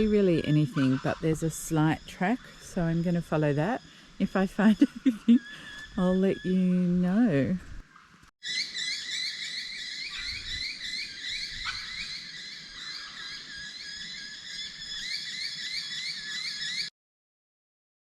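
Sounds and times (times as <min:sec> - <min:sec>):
chorus of chirping calls: 0:08.4 - 0:16.9.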